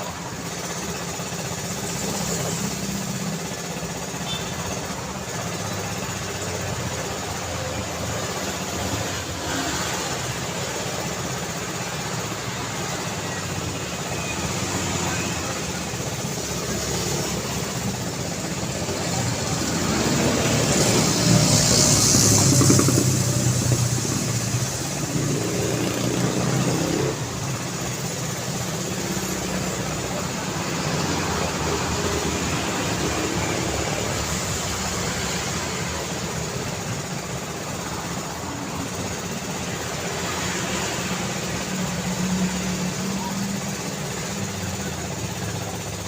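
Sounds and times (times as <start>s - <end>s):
road traffic noise: 0.0s - 46.0s
vehicle engine hum: 0.0s - 46.0s.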